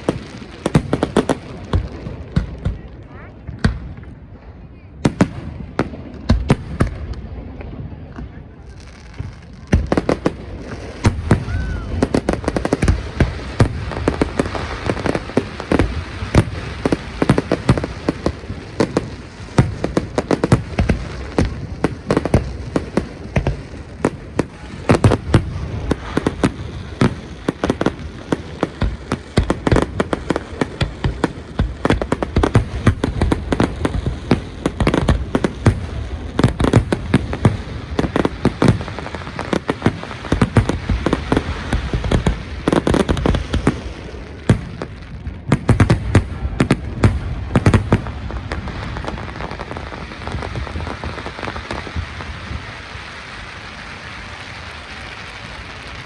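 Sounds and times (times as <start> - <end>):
fireworks bursting with echoes: 0.0 - 56.0.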